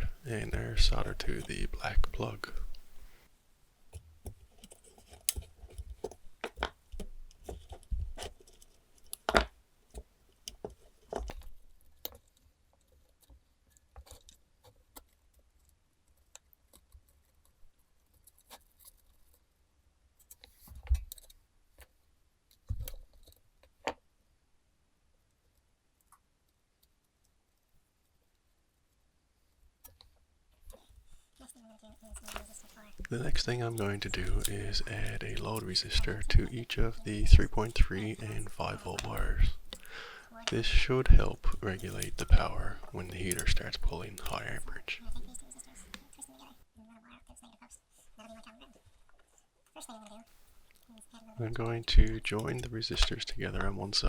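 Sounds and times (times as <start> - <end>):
hands handling wires and tools: 3.9 - 14.4, 32.1 - 46.3.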